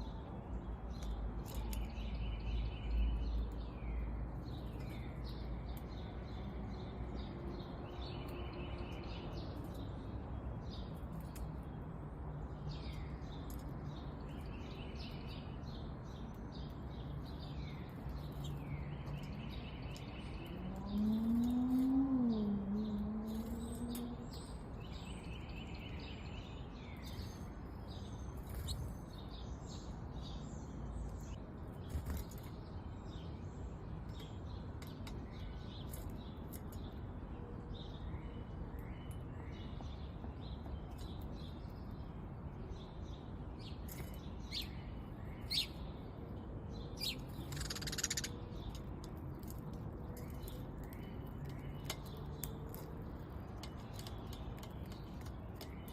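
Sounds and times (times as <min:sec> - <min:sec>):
songbirds calling: 0:00.0 - 0:55.9
bird song with buzzy trill: 0:12.4 - 0:55.9
high bird chips: 0:47.0 - 0:55.9.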